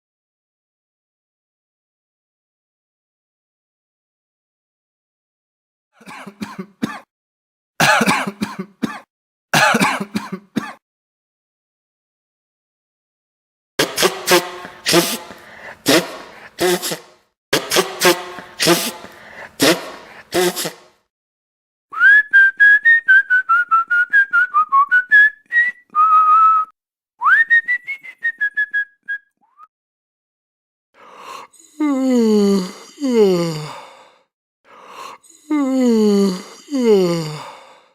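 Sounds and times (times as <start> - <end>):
person clearing their throat: 6.0 - 7.1, 7.8 - 10.8, 13.8 - 21.0
person whistling a melody: 21.9 - 29.7.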